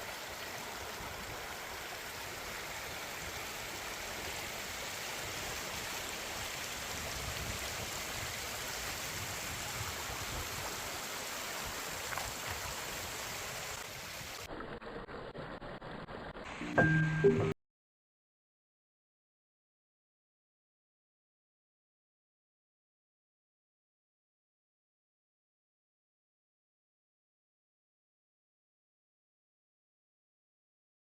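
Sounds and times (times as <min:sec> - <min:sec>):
water rushing: 0:00.0 - 0:17.6.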